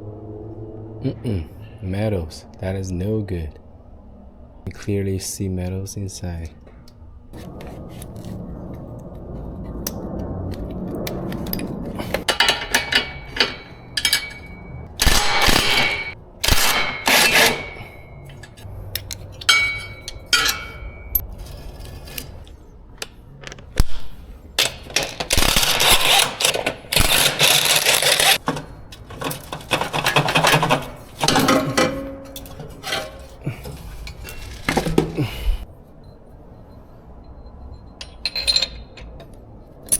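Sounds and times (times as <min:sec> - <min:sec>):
metal tools clinking and scraping: 0:09.6 - 0:39.9.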